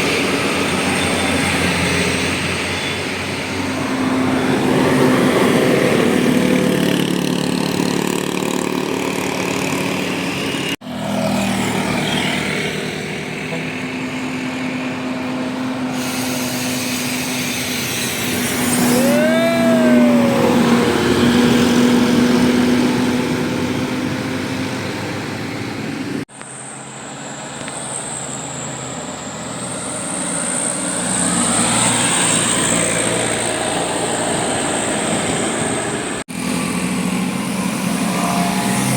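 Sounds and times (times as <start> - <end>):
buses driving uphill: 0.0 - 38.9
diesel engines under load: 0.0 - 38.9
pitched tone rising and falling: 18.6 - 25.2.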